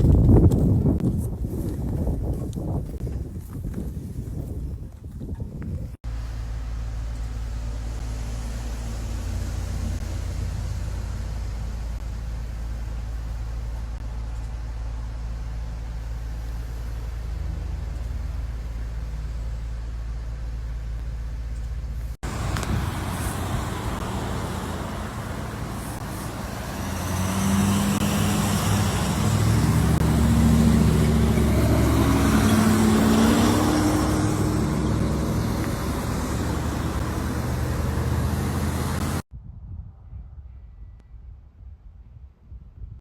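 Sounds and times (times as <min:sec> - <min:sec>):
low road rumble: 0:00.0 - 0:43.0
engine passing close by: 0:06.2 - 0:12.1, 0:22.2 - 0:39.3.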